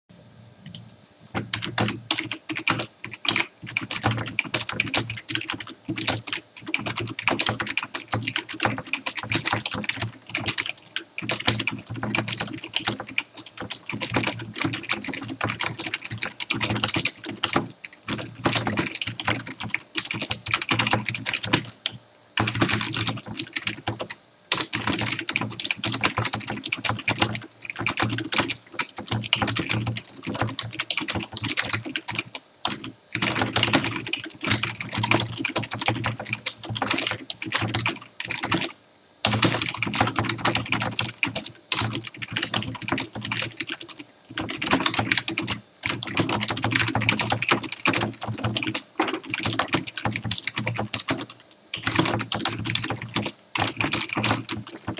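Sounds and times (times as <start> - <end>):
fast typing on keyboard: 1.4 - 54.9.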